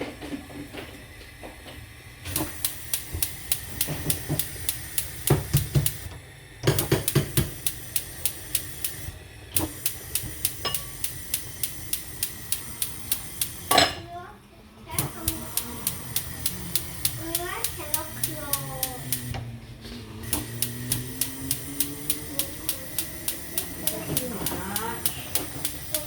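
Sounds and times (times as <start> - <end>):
gas stove igniter clicking: 0.7 - 14.0, 14.9 - 19.5, 20.2 - 26.0
burner knob knocks: 2.3 - 13.9.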